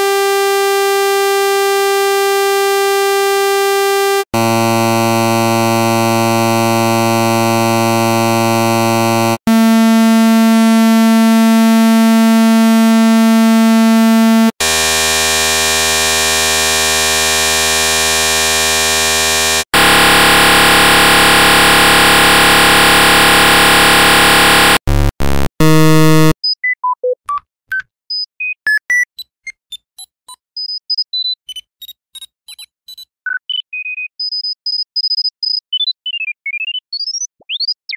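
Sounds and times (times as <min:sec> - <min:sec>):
long buzzy electronic beeps: 0:02.2 - 0:15.2, 0:16.0 - 0:26.4
short blips at varied pitches: 0:19.8 - 0:26.4.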